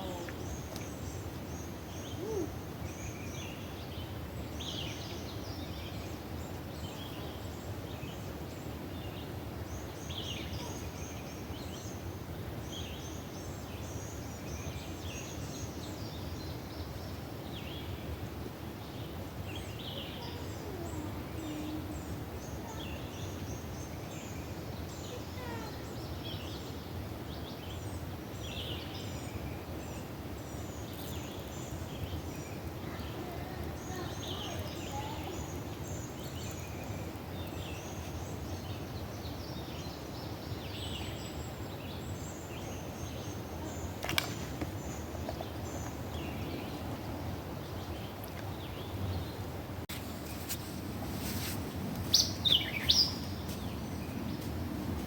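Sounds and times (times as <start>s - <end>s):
low rushing background noise: 0.0s - 55.0s
birds calling and chirping: 27.4s - 55.0s.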